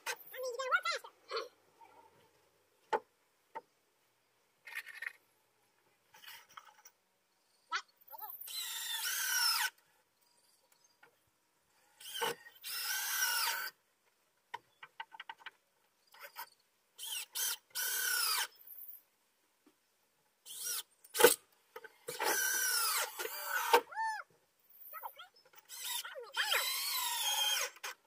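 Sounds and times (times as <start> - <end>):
power drill driving screws: 8.4 - 9.8, 12.0 - 13.8, 17.0 - 18.5, 20.5 - 21.4, 22.1 - 23.9, 25.6 - 28.0.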